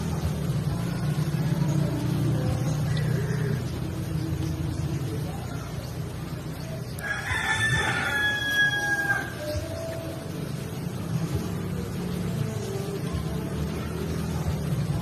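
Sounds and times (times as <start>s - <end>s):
rooster crowing: 7.0s - 9.6s.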